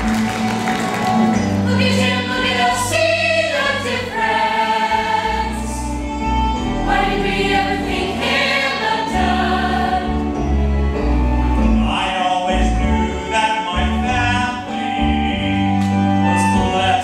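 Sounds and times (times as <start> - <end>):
instrumental accompaniment: 0.0 - 17.0
choir singing: 1.2 - 11.7.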